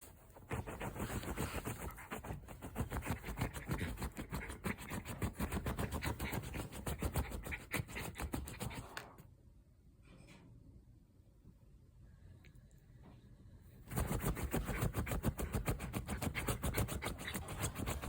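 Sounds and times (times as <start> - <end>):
puppy scratching fabric: 0.0 - 9.0, 13.9 - 18.0.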